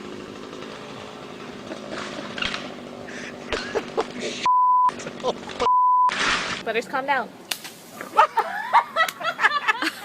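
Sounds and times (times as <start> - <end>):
engine idling: 0.0 - 5.6
censor bleep: 4.5 - 5.0, 5.6 - 6.1.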